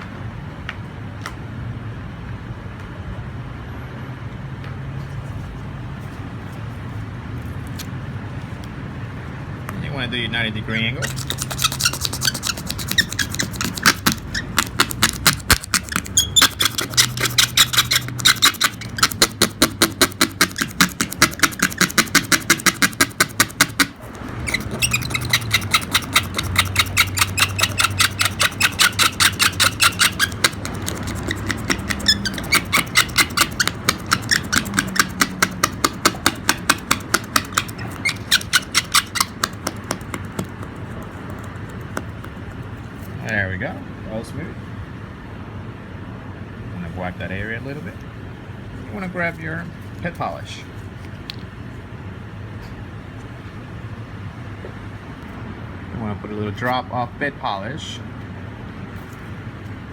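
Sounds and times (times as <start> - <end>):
razor blade scraping glass: 11.0 - 42.5.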